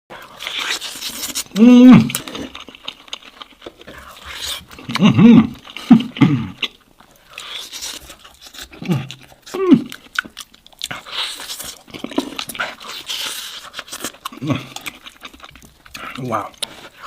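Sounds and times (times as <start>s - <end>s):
crunchy chewing: 0.1s - 17.0s
low hums or grunts: 1.5s - 2.2s.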